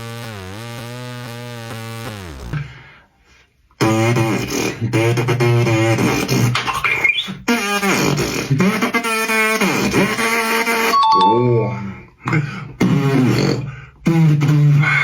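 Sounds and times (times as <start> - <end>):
warbling voice-like music melody: 11.0 - 12.0.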